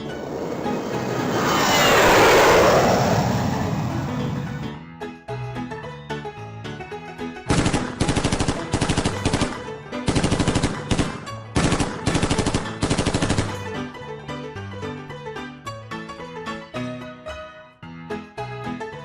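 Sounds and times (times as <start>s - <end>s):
keyboard background music: 0.0s - 1.7s, 3.7s - 19.0s
machine-gun fire: 7.5s - 13.6s.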